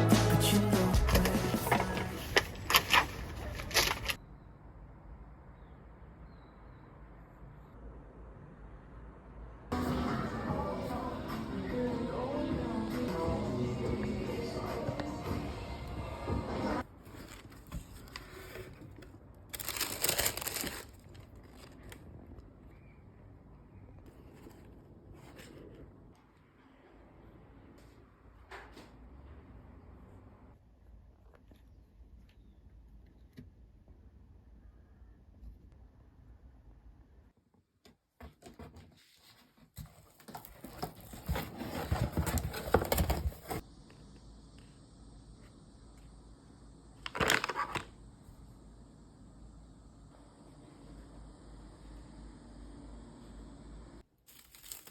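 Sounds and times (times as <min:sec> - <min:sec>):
rustling: 0:01.0 - 0:04.2, 0:17.0 - 0:22.1, 0:39.0 - 0:43.6, 0:54.3 - 0:54.9.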